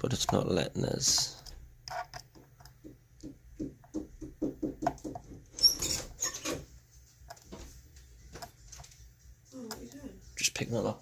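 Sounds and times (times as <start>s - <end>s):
lock pick scratchy taps: 1.1s - 5.4s.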